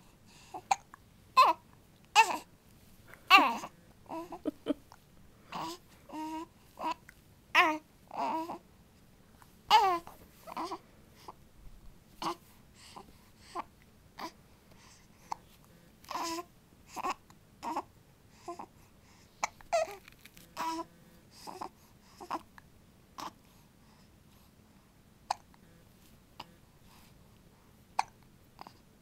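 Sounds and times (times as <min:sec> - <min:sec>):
baby fussy cries: 0:03.3 - 0:04.6, 0:09.7 - 0:10.8
baby hiccuping: 0:28.0 - 0:28.7.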